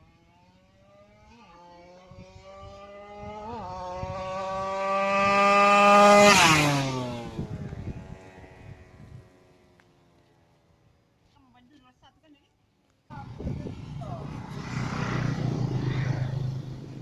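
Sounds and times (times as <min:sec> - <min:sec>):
motorcycle engine revving: 0:00.0 - 0:09.3, 0:13.1 - 0:17.0.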